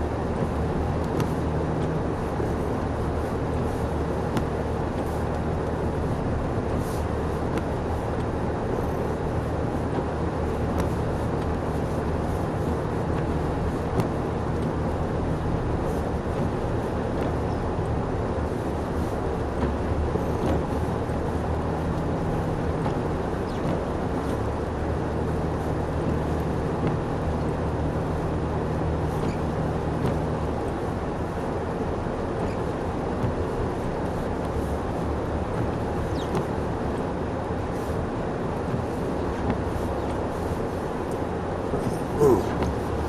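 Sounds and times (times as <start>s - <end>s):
car engine hum: 0.0s - 43.0s
tyres rushing on snow: 0.0s - 43.0s.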